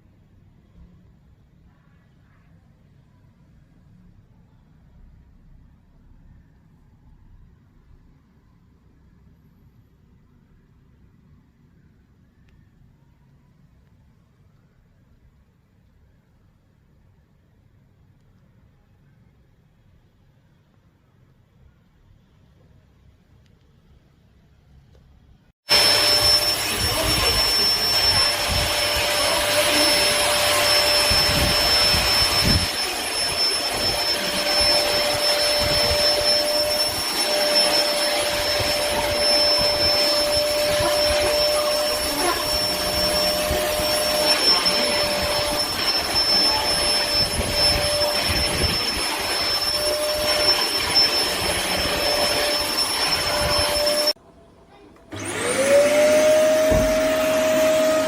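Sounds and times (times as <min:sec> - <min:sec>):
vacuum cleaner running: 0:25.6 - 0:54.2, 0:55.1 - 0:58.0.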